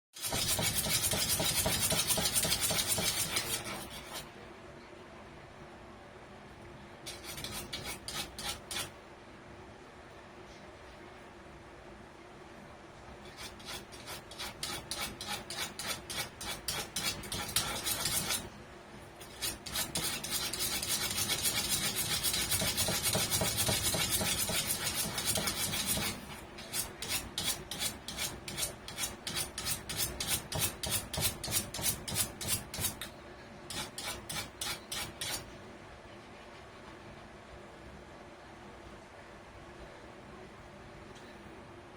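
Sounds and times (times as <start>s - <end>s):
rasping strokes on a surface: 0.2s - 4.3s, 7.1s - 8.9s, 13.2s - 18.5s, 19.2s - 33.1s, 33.7s - 35.5s.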